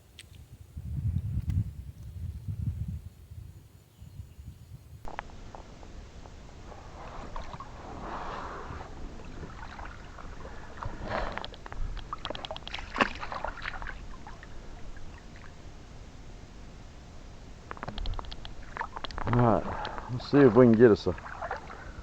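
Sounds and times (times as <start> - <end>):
water sloshing: 5.1 - 22.0
sharp clicks and knocks: 17.7 - 20.0.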